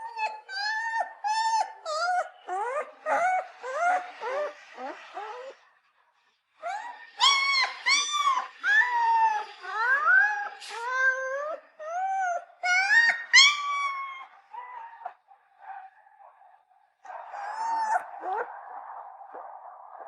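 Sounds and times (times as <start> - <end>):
puppy whimpering: 0.0 - 5.6, 6.6 - 15.2, 17.2 - 18.5.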